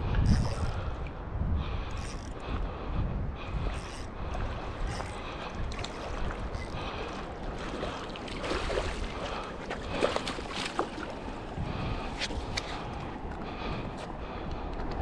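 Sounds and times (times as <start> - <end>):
wind buffeting microphone: 0.0 - 15.0
rushing water: 4.2 - 13.5.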